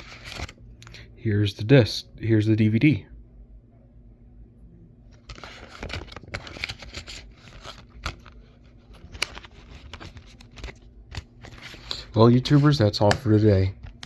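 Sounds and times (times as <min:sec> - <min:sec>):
plastic case rustling and scraping: 0:05.1 - 0:13.4.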